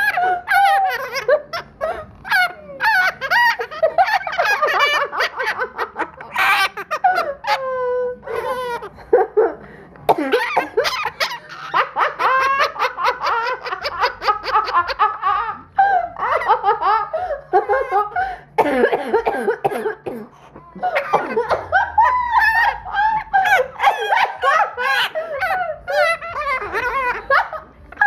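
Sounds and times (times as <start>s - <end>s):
parrot mimicking laughter: 0.0s - 9.4s, 10.1s - 15.6s, 20.9s - 28.0s.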